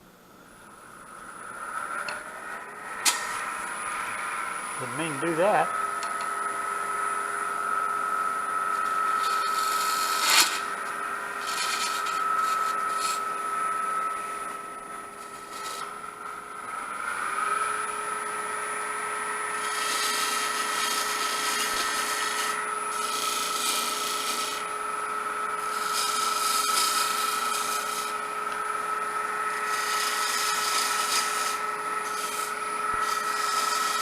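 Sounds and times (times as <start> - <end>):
wood lathe motor whine: 0.6 - 34.0
turning tool cutting wood hissing: 1.3 - 34.0.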